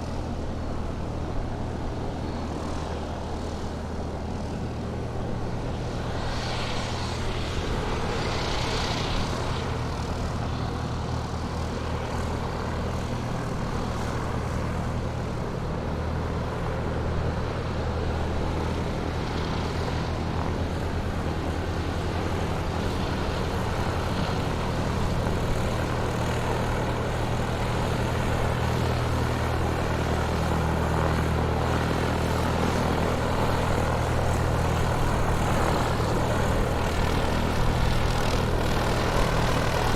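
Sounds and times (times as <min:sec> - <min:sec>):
airplane engines droning: 0:00.0 - 0:39.9.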